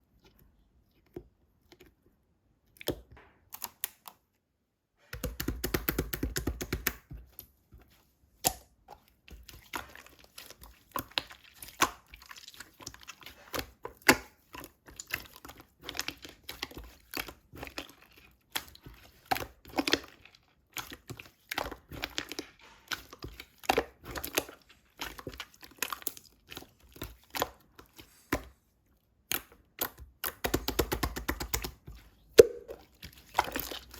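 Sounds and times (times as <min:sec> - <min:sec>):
slime squished by hand: 0:29.2 - 0:33.9
sticky crackling and popping: 0:29.3 - 0:33.9.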